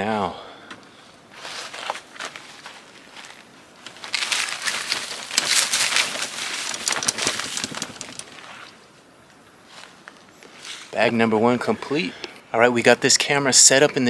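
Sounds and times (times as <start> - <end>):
grass clippings rustling: 1.5 - 8.8.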